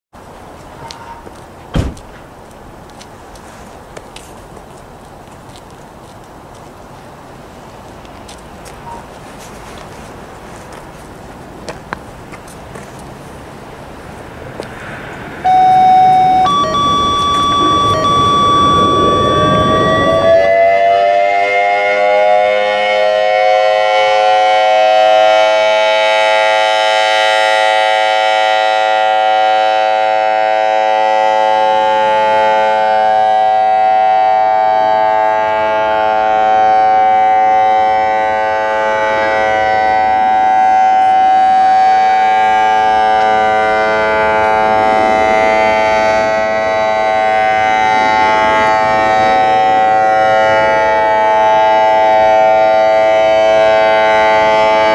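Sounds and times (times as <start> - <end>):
dual-tone electronic siren: 15.4 - 54.9.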